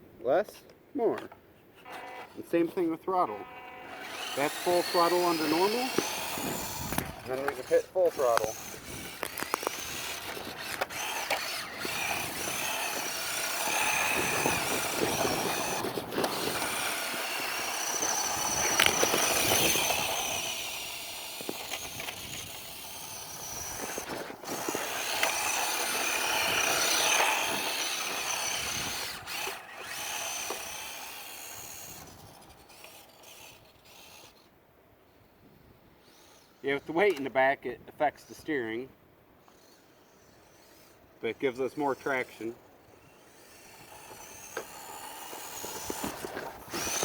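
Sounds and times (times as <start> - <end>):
toy car electric motor whining: 1.8 - 34.6, 35.2 - 37.4, 39.4 - 47.0.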